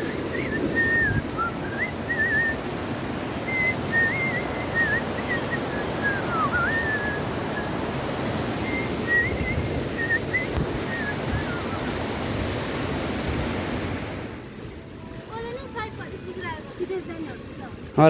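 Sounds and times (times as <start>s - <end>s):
person whistling a tune: 0.0s - 2.7s, 3.5s - 7.8s, 8.6s - 11.8s
steady rushing noise: 0.0s - 15.0s.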